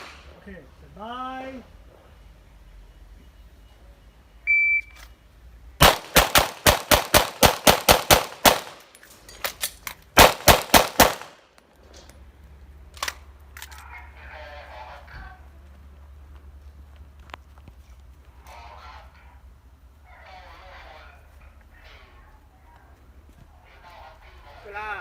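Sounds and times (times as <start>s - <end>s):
shot timer beep: 4.5s - 5.0s
pistol shots: 5.8s - 8.9s, 10.2s - 11.4s.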